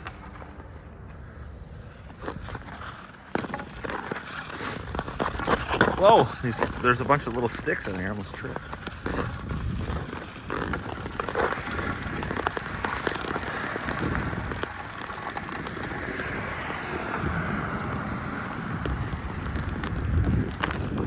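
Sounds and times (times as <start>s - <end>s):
ice skate blades scraping: 0.0s - 21.0s
wind on microphone: 8.9s - 21.0s.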